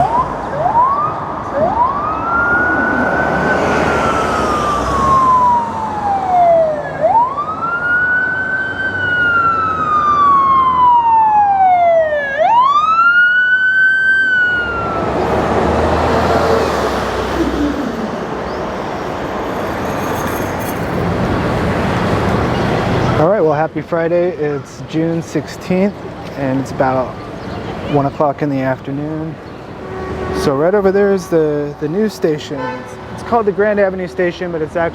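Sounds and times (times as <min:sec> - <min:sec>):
emergency vehicle siren: 0:00.0 - 0:21.8
traffic noise: 0:00.0 - 0:34.9.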